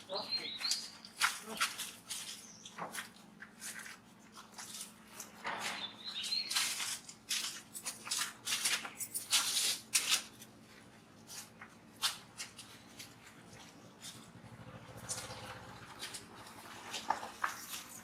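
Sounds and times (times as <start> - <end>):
rustling and scraping: 0.7 - 18.0.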